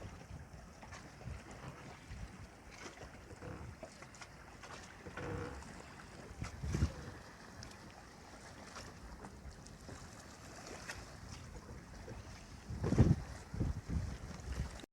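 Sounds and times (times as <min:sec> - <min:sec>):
sea water washing around boat: 0:00.0 - 0:14.9
wind buffeting microphone: 0:06.3 - 0:07.3, 0:11.7 - 0:14.8.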